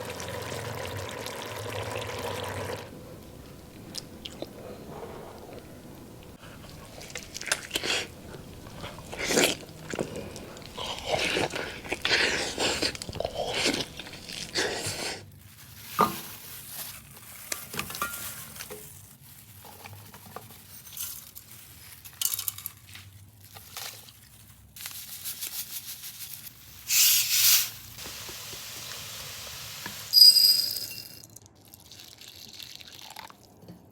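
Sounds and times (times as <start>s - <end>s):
biting and crunching chews: 3.2s - 15.2s.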